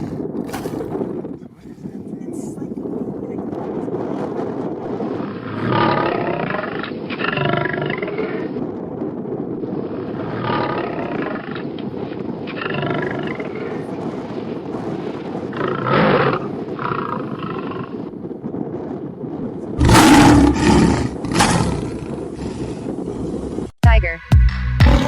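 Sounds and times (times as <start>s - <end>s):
lion roaring: 5.1s - 8.6s, 10.2s - 11.6s, 15.5s - 17.9s, 19.7s - 23.3s.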